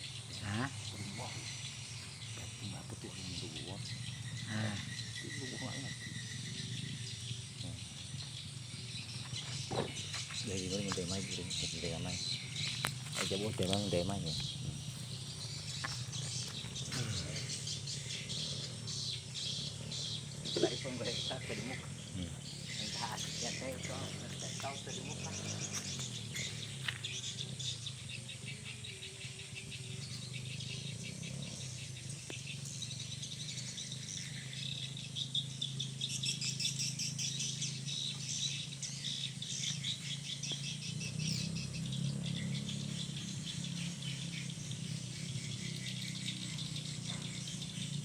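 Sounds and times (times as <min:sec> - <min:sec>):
steady low hum: 0:00.0 - 0:36.4
swiftlets twittering: 0:00.0 - 0:48.0.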